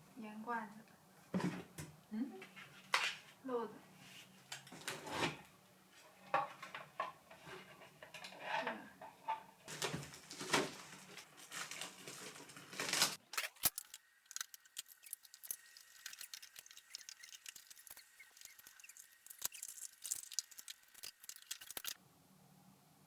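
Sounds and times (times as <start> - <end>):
utensils clicking and clinking: 6.2 - 22.0.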